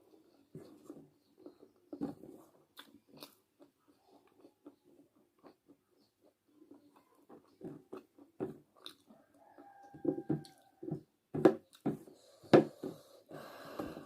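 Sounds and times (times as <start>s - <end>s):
person chewing food: 0.1s - 14.0s.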